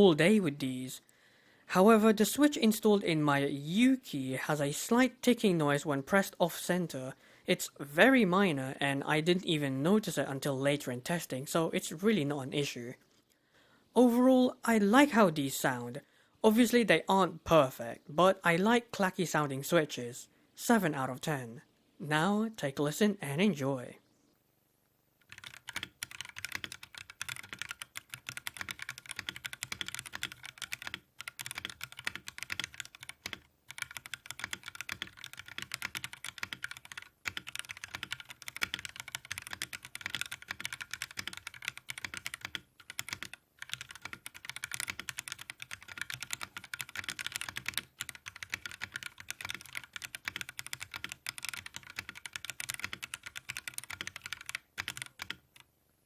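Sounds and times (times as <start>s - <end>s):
typing on mechanical keyboard: 25.2s - 55.6s.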